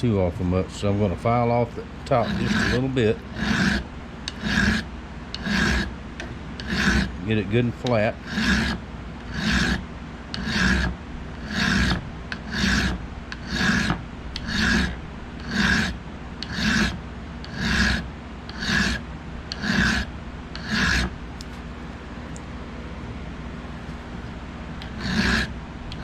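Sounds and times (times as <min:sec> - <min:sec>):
hand file rasping on metal: 0:02.1 - 0:05.9, 0:06.6 - 0:21.1, 0:24.8 - 0:26.0.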